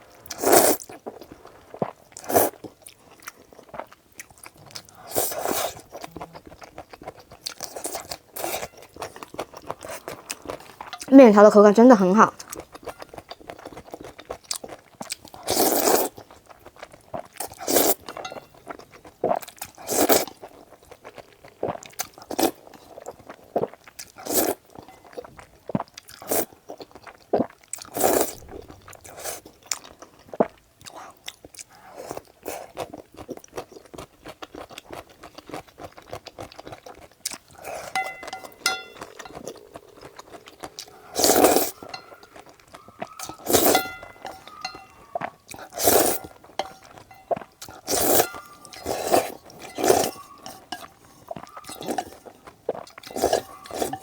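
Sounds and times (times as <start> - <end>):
wet chewing: 0.2 - 11.1, 12.4 - 54.0
noodle slurping: 4.5 - 6.7, 15.4 - 16.2, 17.4 - 18.0, 37.5 - 47.0, 47.7 - 54.0.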